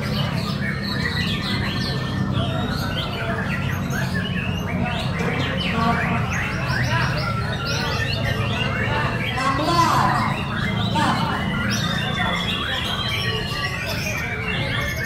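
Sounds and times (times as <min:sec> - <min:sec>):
many birds whistling and chirping: 0:00.0 - 0:15.0
murmur of voices: 0:00.0 - 0:15.0.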